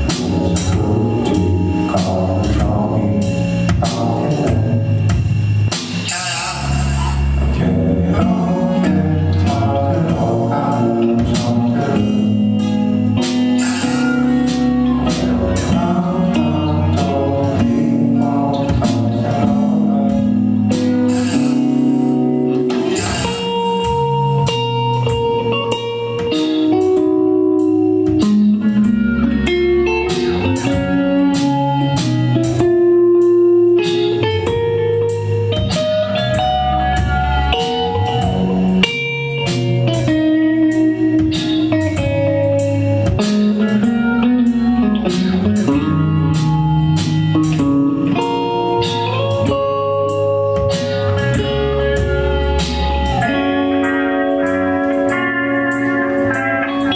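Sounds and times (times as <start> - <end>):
electric guitar blues: 0.0 - 56.9
walking bass line: 0.0 - 56.9
drum beat: 33.9 - 40.4.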